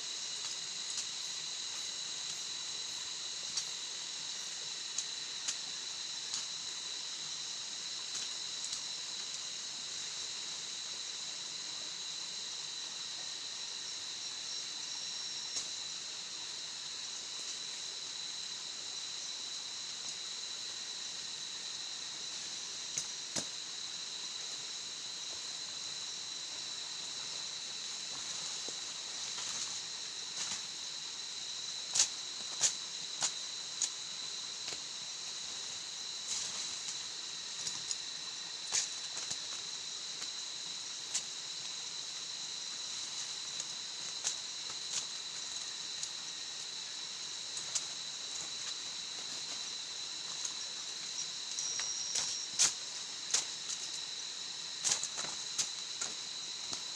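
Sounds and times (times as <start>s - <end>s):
high-pitched insect chorus: 0.0s - 56.9s
sharp snaps and cracks: 31.9s - 33.9s.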